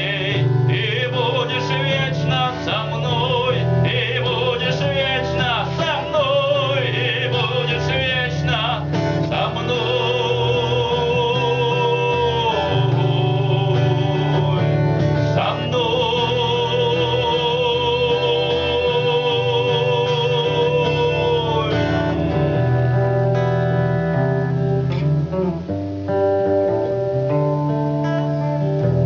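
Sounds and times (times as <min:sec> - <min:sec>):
man singing long notes: 0:00.0 - 0:22.8
guitar accompaniment: 0:00.0 - 0:29.0.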